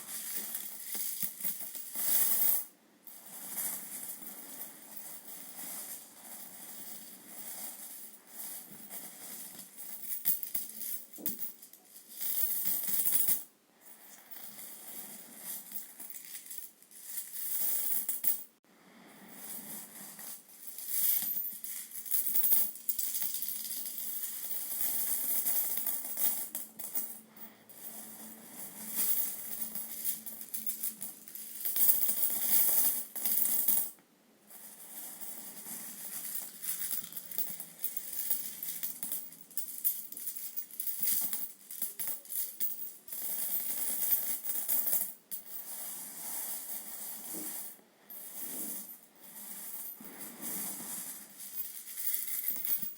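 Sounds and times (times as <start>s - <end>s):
coins falling and clinking: 51.6s - 52.9s.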